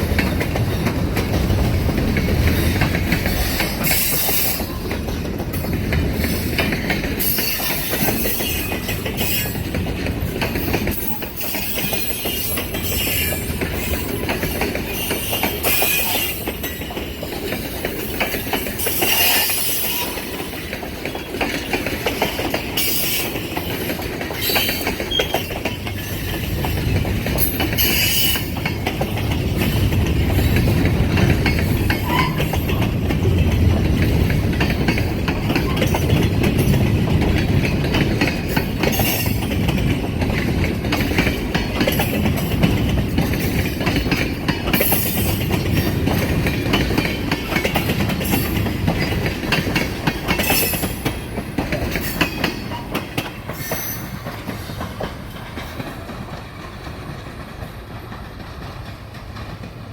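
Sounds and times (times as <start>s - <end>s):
train wheels rumbling on rails: 0.0s - 59.9s
wheel squeal: 24.4s - 26.2s, 53.5s - 54.2s.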